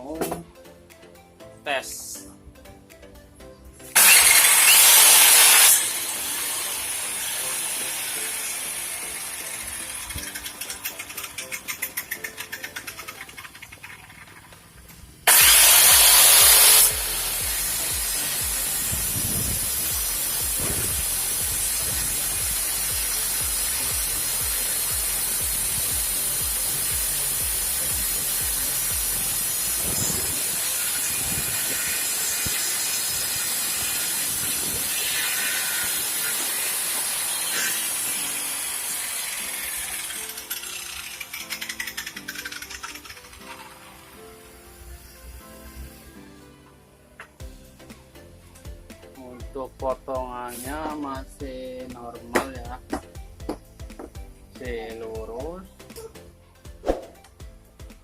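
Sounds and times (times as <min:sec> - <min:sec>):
circular saw cutting: 0:03.9 - 0:13.3, 0:15.3 - 0:46.3.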